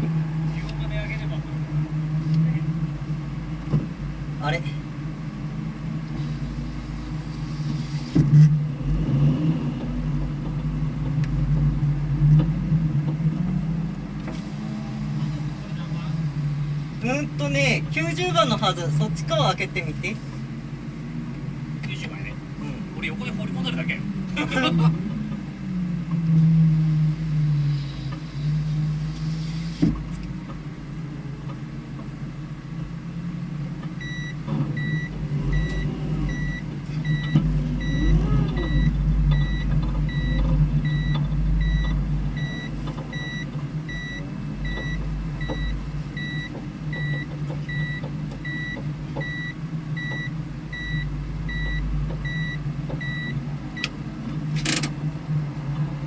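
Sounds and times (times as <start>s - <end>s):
vehicle engine idling: 9.8s - 56.0s
electronic beeps: 34.0s - 53.4s.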